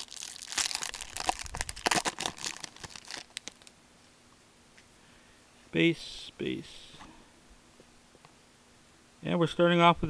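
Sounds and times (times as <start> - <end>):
wrapper tearing and crinkling: 0.0 - 3.7.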